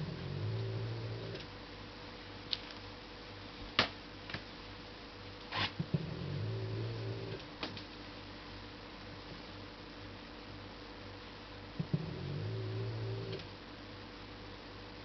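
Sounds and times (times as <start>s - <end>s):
washing machine humming: 0.0s - 1.8s, 4.9s - 7.6s, 11.4s - 14.3s.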